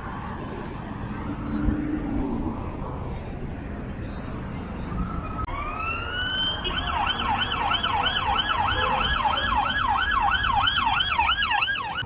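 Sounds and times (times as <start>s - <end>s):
street crowd background: 0.0s - 12.0s
emergency vehicle siren: 4.9s - 12.0s.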